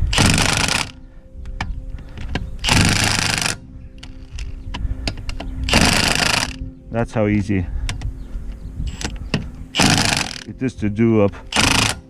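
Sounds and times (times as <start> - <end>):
impact wrench hammering bolts: 0.1 - 0.9, 2.6 - 3.6, 5.1 - 6.6, 8.9 - 10.5, 11.5 - 12.0.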